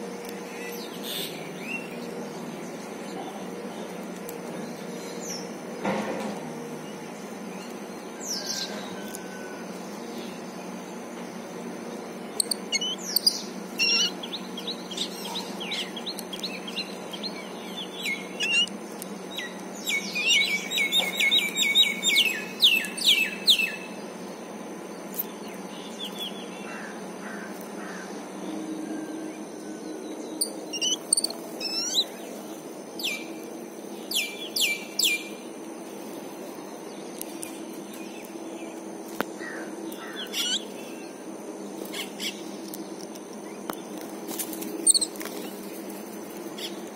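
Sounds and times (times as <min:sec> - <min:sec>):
birds chirping: 0:00.0 - 0:46.9
steady low hum: 0:00.0 - 0:46.9.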